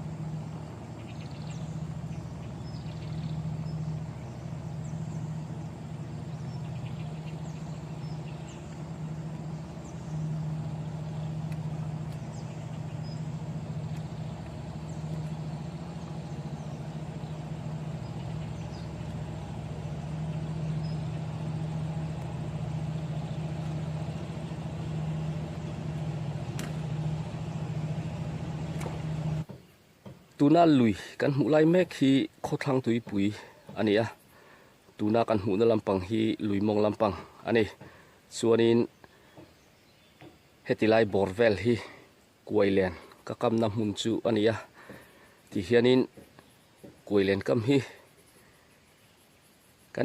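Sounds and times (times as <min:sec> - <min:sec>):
low motor hum: 0:00.0 - 0:30.2.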